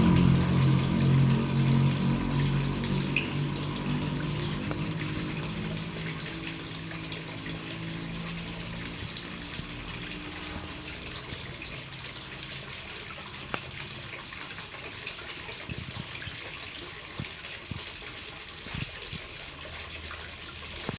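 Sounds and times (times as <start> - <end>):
raindrop ticks: 0.0 - 11.5, 13.4 - 13.8
low hum: 0.0 - 11.6
steady rain hiss: 0.0 - 12.7.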